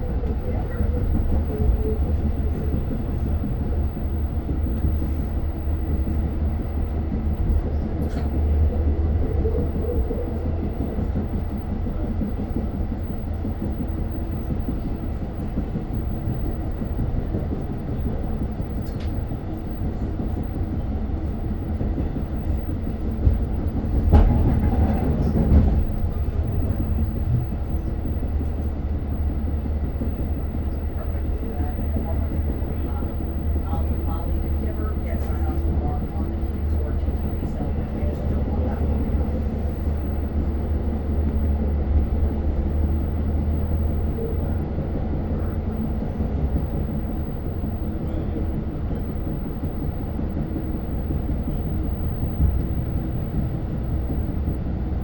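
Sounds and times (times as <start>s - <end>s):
diesel train rumbling: 0.0s - 55.0s
knocks from track: 24.0s - 26.0s.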